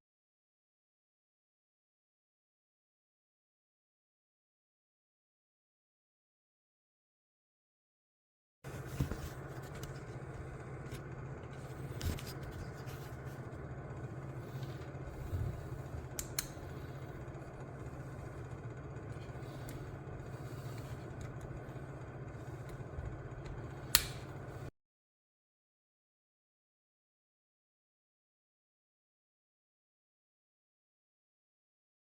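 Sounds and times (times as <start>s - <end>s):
low room hum: 8.7s - 24.7s
clicks and taps of tools: 23.4s - 24.3s.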